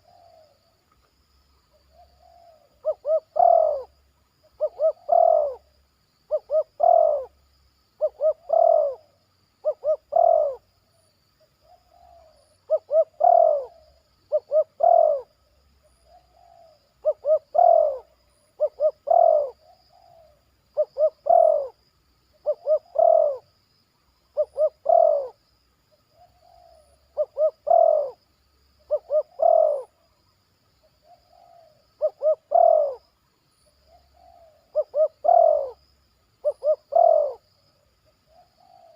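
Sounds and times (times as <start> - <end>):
dove cooing: 0.0 - 0.7, 1.8 - 4.0, 4.6 - 5.7, 6.3 - 7.4, 8.0 - 10.7, 11.6 - 21.8, 22.4 - 23.5, 24.3 - 25.4, 26.1 - 28.2, 28.8 - 30.0, 31.0 - 33.1, 33.8 - 35.8, 36.4 - 37.5, 38.2 - 38.9.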